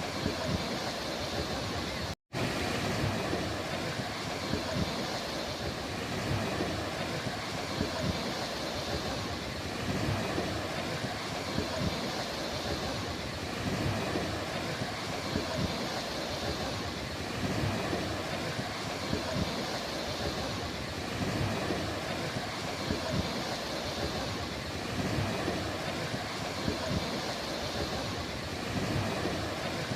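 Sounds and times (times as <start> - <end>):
sea waves washing onto beach: 0.0 - 29.9.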